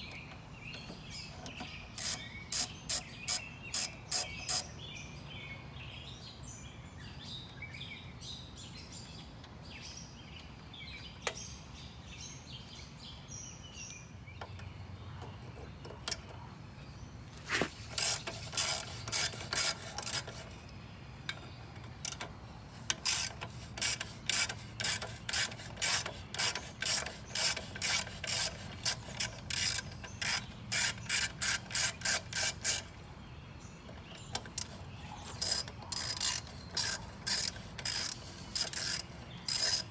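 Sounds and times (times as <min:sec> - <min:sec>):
faint birds chirping: 0:00.0 - 0:39.9
socket ratchet clicking: 0:22.9 - 0:32.9, 0:34.4 - 0:39.9.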